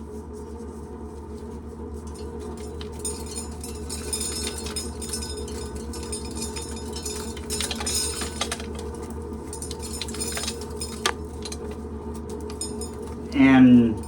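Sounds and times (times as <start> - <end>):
corn sheller humming: 0.0 - 14.0
kernels rattling against metal: 2.2 - 13.3.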